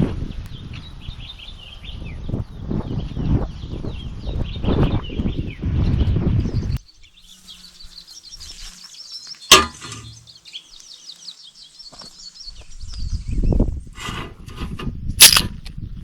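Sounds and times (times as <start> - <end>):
birds chirping: 0.2 - 14.0
sharp loud click: 15.2 - 15.5.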